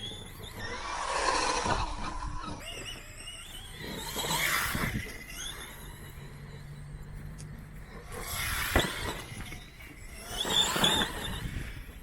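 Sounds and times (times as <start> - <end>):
toy truck electric motor whining: 0.0 - 12.0.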